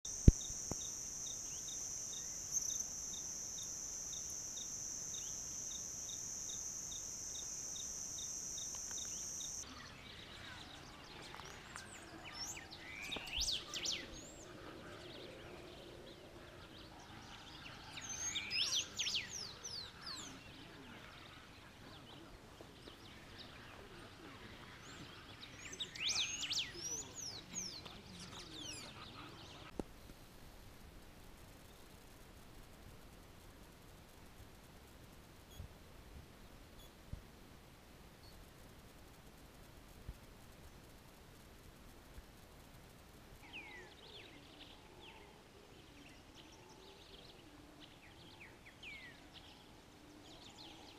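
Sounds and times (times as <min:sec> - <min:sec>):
high-pitched insect trill: 0:00.1 - 0:09.6, 0:18.0 - 0:20.2
insect ticking: 0:00.1 - 0:09.6
birds chattering calls: 0:00.1 - 0:29.8.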